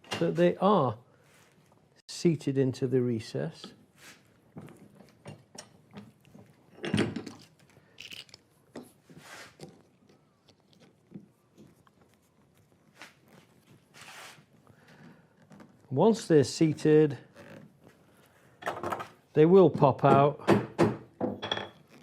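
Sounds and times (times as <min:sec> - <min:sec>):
wood rubbing scrapes: 0:12.9 - 0:15.8
wood knocking on wood and metal: 0:18.6 - 0:21.8.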